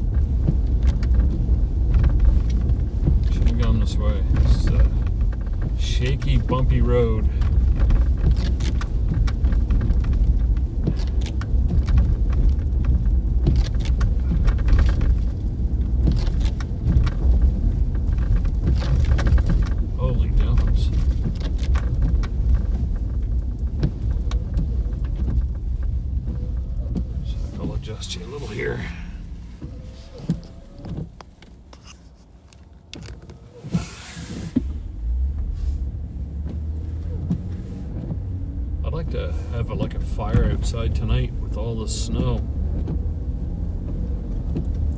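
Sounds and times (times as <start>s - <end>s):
tyre and engine rumble: 0.0s - 44.9s
small clicks and rattles: 0.1s - 33.4s
short hiss: 33.7s - 34.6s.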